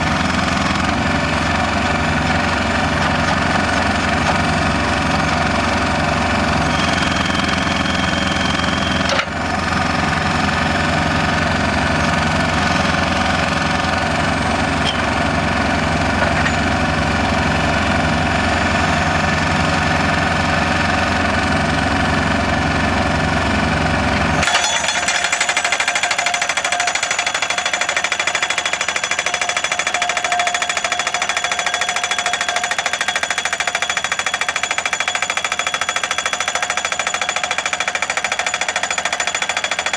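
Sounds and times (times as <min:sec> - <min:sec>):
pile driver hammer pounding steel post: 0:24.4 - 0:39.9.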